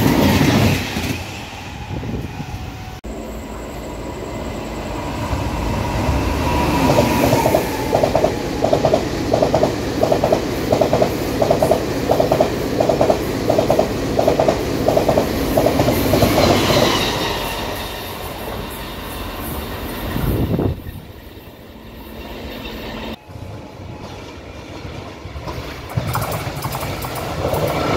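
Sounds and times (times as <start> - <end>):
train running noise: 0.0 - 27.9
train wheels clacking over rail joints: 6.9 - 17.1, 25.4 - 27.9.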